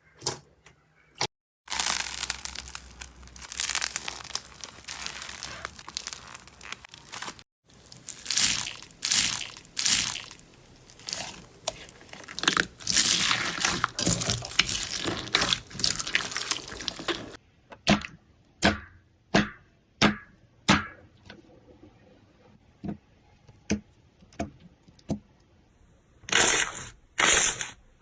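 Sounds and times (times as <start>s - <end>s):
slime crackling and crunching: 1.7s - 17.4s.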